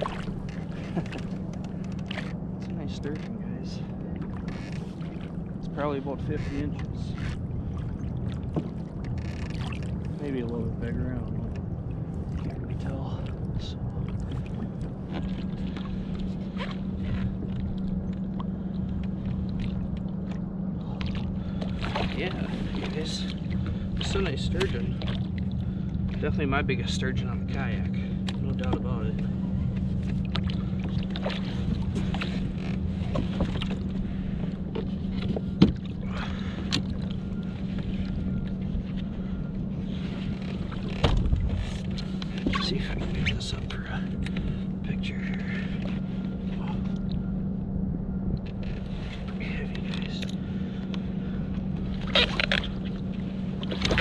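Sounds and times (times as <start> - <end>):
knocks and clatter on a kayak: 0.0 - 5.7, 6.4 - 10.2, 11.1 - 44.7, 48.3 - 54.0
steady low hum: 0.0 - 54.0
wind and water rumble: 0.0 - 54.0
kayak clicks and knocks: 34.7 - 36.0, 40.4 - 42.6.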